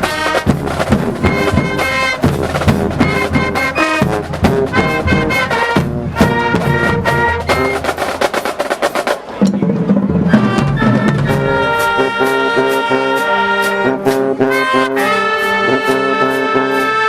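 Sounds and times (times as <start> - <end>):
drum hits: 0.0 - 12.4
marching band playing: 0.0 - 17.0.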